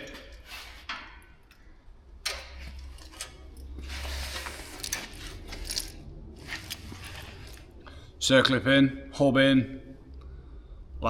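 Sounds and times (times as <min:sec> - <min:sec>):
metal scraping: 0:02.6 - 0:07.8.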